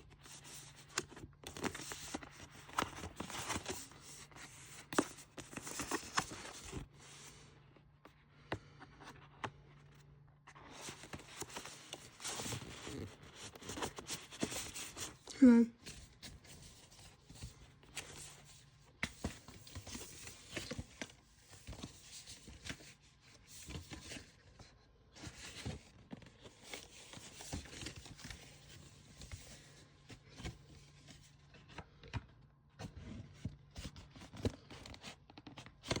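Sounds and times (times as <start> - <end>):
plastic cases rustling and scraping: 0.1 - 7.9, 8.5 - 15.2.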